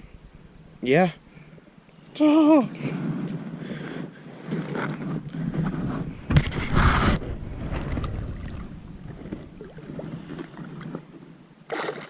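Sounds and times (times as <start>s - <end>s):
wind on microphone: 4.5s - 11.0s.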